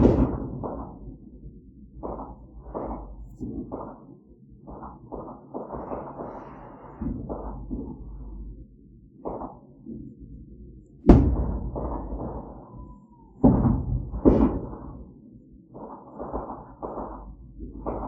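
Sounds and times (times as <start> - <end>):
fireworks bangs: 0.0 - 1.1, 4.7 - 7.7, 11.1 - 15.0.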